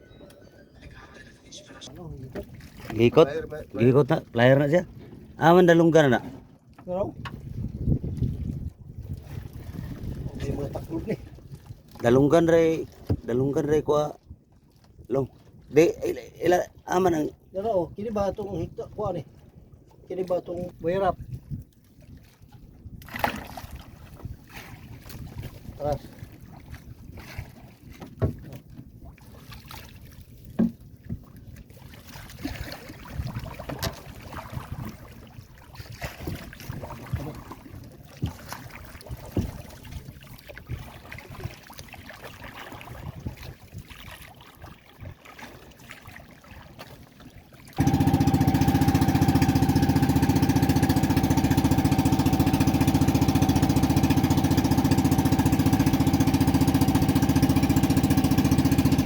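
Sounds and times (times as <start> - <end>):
water sounds: 0.0 - 59.0
boat engine running: 47.7 - 59.0.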